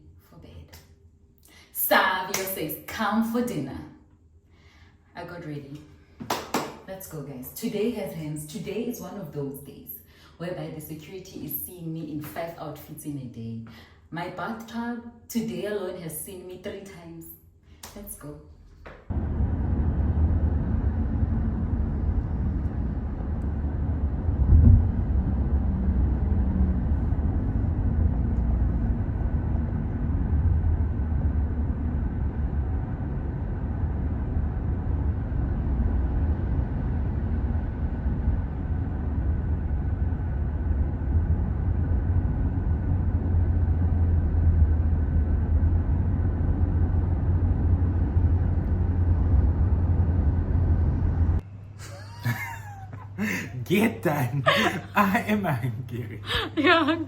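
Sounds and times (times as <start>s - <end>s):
vehicle rumble in motion: 19.1s - 51.4s.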